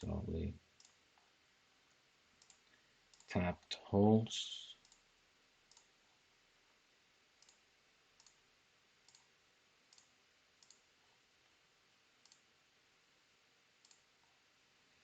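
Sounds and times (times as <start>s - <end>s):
computer mouse clicks: 0.8s - 1.3s, 2.4s - 3.3s, 4.8s - 5.1s, 5.7s - 5.9s, 7.4s - 7.6s, 8.2s - 8.4s, 9.0s - 9.3s, 9.9s - 10.9s, 12.2s - 12.5s, 13.8s - 14.1s.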